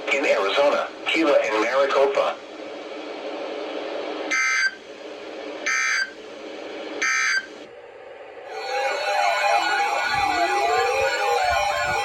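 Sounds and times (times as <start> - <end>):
warbling electronic sound: 8.5 - 12.0.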